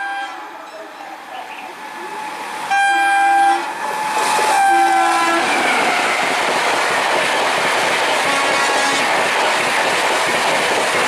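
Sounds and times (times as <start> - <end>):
train rushing past: 1.0 - 11.0
train horn blasts: 2.7 - 3.8, 4.4 - 6.1, 8.2 - 9.1.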